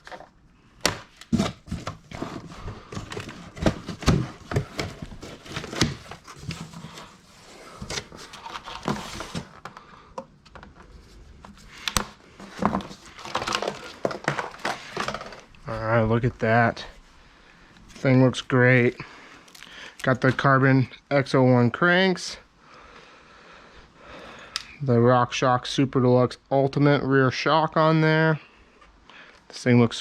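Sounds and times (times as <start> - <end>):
cardboard knocks and thuds: 0.8 - 6.6.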